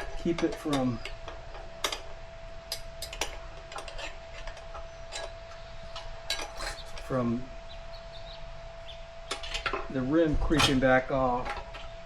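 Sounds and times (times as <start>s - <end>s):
faint steady hum: 0.0s - 12.0s
metal tools clinking: 2.7s - 5.4s, 6.3s - 7.2s.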